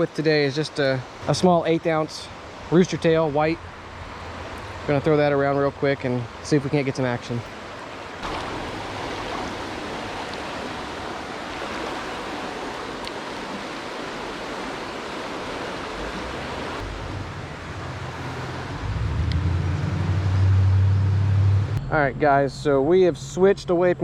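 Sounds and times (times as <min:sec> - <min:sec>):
creek water running: 0:00.0 - 0:20.6
low rumble: 0:16.0 - 0:24.0.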